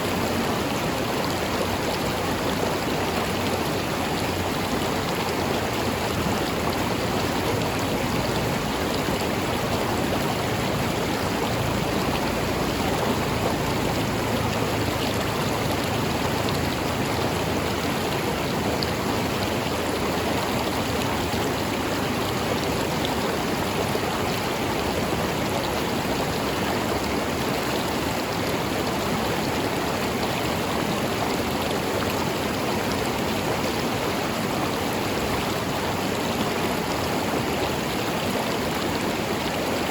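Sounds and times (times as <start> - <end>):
river flowing over rocks: 0.0 - 39.9.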